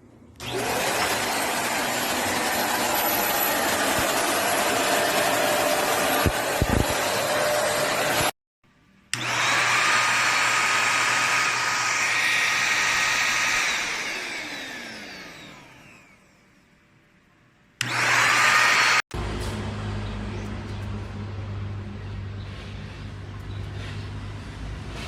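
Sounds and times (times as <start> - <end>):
vacuum cleaner motor: 0.4 - 8.3, 9.1 - 16.5, 17.8 - 19.0.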